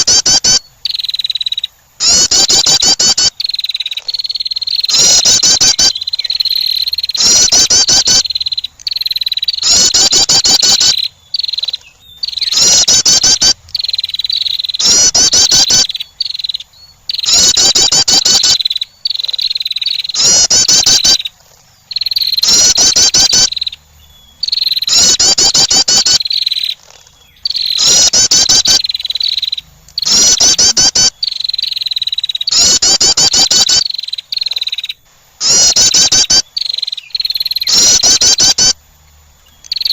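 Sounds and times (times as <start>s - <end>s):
wren chattering trill: 0.0s - 38.8s, 39.4s - 39.9s
steady high buzz: 4.4s - 19.1s, 27.3s - 39.9s.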